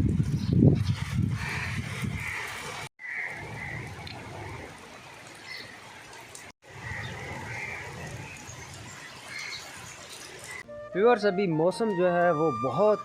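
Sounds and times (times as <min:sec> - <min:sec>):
wind rumble on microphone: 0:00.0 - 0:02.8, 0:07.0 - 0:09.0
birds calling: 0:01.4 - 0:10.7
steady rain falling: 0:02.2 - 0:10.6.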